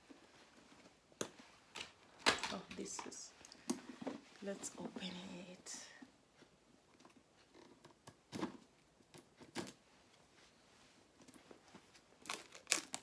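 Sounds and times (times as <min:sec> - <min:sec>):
packaging being torn open: 0:12.2 - 0:13.0.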